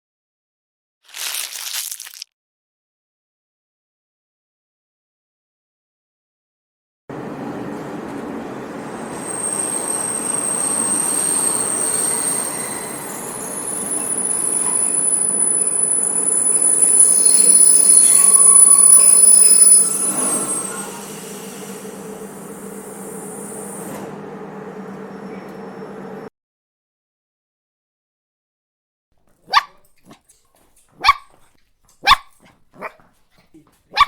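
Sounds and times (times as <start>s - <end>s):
train rumbling on rails: 7.1s - 26.3s
wheel squeal: 9.0s - 24.1s.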